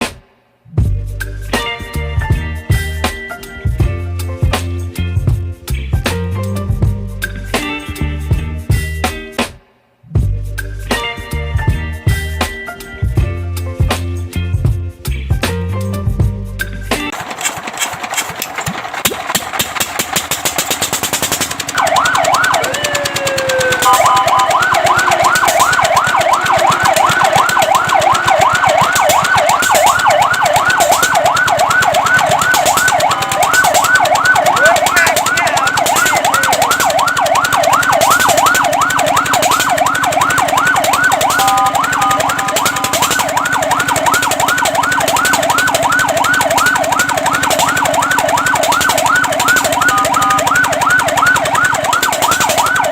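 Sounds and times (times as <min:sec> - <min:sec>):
fire truck siren wailing and yelping: 0:17.1 - 0:52.9
rapid ticking rattle: 0:17.1 - 0:52.9.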